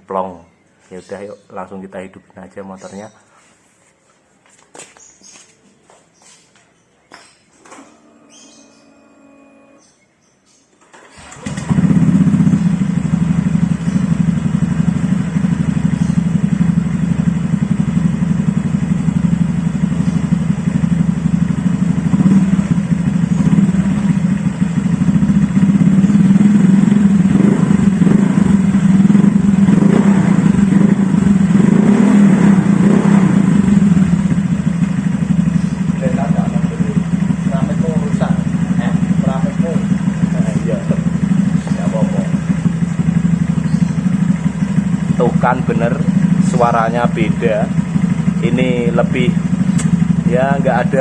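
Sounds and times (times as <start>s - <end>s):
scooter engine running: 7.8s - 9.9s, 10.9s - 51.0s.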